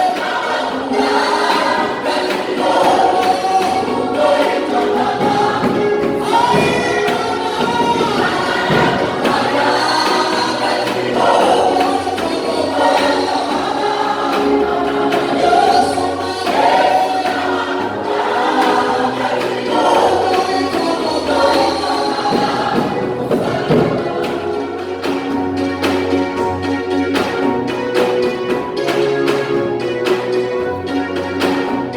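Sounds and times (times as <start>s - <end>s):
choir singing gospel music: 0.0s - 31.9s
instrumental backing: 0.0s - 31.9s.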